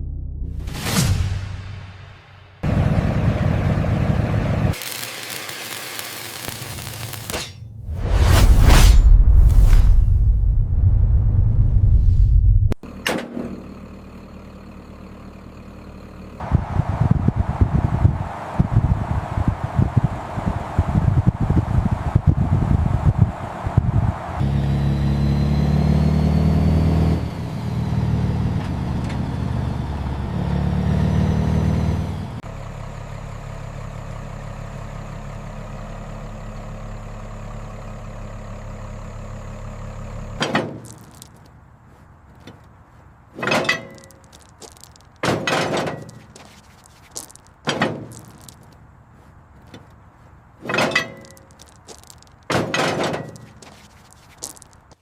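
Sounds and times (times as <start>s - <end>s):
car engine revving and idling: 24.1s - 35.5s.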